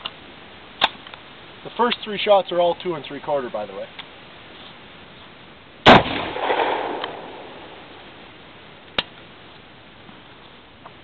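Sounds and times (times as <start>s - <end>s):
shotgun shot with echo: 5.9s - 7.9s.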